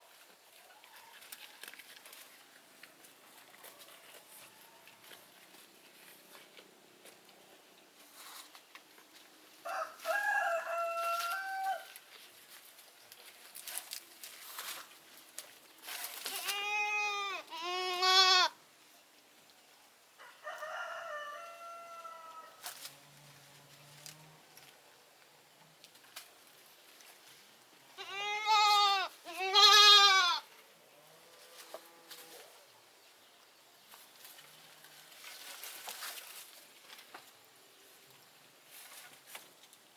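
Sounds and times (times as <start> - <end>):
goats bleating: 16.4 - 18.6, 28.0 - 30.4.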